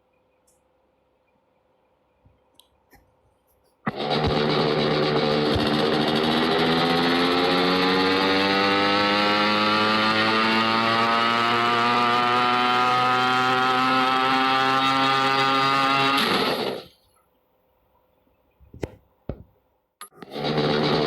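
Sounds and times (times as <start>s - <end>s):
scooter engine revving: 3.9s - 16.9s, 20.2s - 21.0s.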